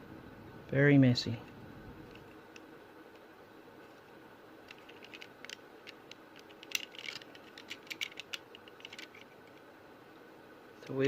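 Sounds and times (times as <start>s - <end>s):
toy car clicking and tapping: 4.7s - 9.3s.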